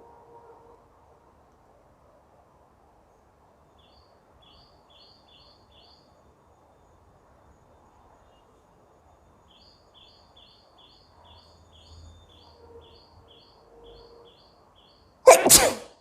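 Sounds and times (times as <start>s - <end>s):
woman sneezing: 15.3s - 15.9s.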